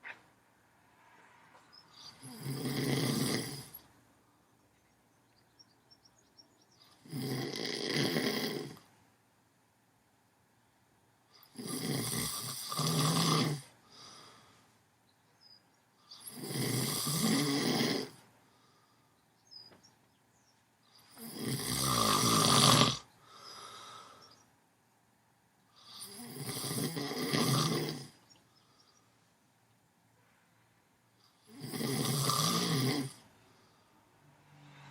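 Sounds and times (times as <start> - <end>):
person snoring: 1.9 - 3.8, 6.9 - 8.8, 11.4 - 14.5, 16.1 - 18.2, 21.0 - 24.2, 25.8 - 28.2, 31.3 - 33.2
quiet breathing: 13.6 - 15.0, 18.1 - 19.9, 23.1 - 24.6, 28.1 - 31.5, 33.2 - 34.9.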